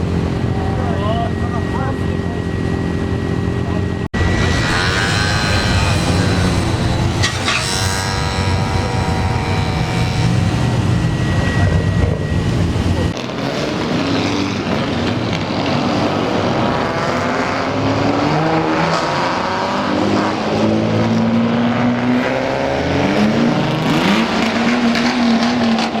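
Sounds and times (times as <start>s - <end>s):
car engines revving: 0.0s - 26.0s.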